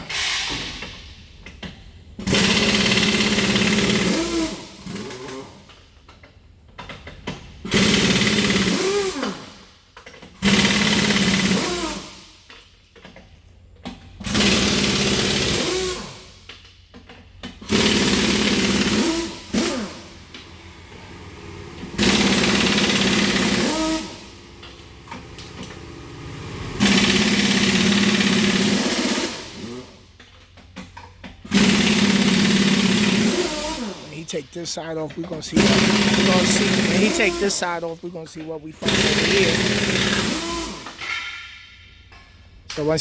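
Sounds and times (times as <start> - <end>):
impact wrench running in bursts: 2.2 - 5.6, 7.6 - 9.6, 10.4 - 12.2, 14.2 - 16.3, 17.5 - 30.0, 31.4 - 41.4.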